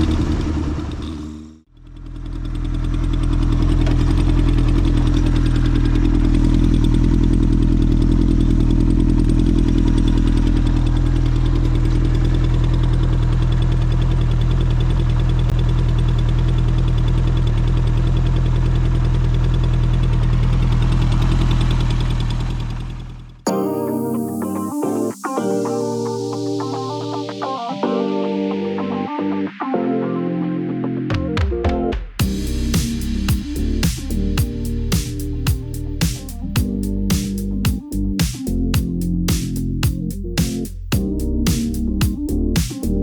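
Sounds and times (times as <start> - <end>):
motorcycle engine idling: 0.0 - 23.4, 32.2 - 38.1.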